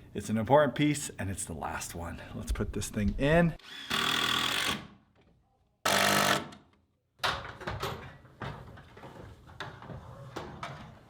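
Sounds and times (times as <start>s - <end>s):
power drill burst: 3.6s - 4.8s.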